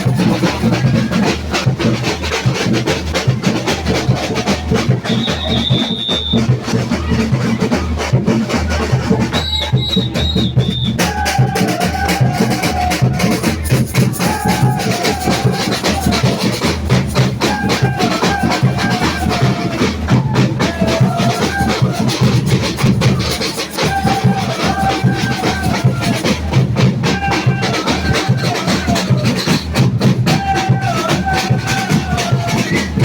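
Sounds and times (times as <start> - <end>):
samba percussion ensemble: 0.0 - 33.0
whistle blasts: 5.0 - 6.6, 9.3 - 11.2.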